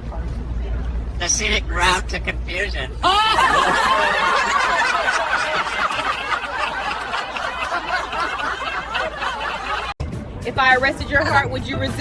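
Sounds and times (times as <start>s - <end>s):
people laughing together: 3.0s - 10.0s.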